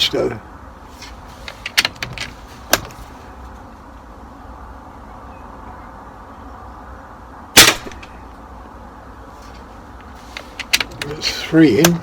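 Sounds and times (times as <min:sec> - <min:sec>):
air rifle shot: 0:07.6 - 0:08.2.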